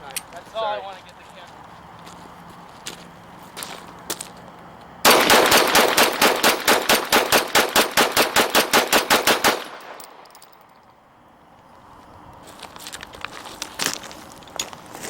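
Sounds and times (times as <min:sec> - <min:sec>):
rapid gunfire: 0:05.0 - 0:10.0.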